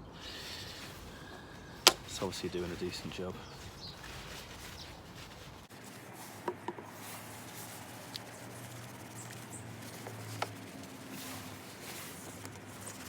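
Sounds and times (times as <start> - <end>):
cloth wiping plastic handle: 1.8 - 7.5.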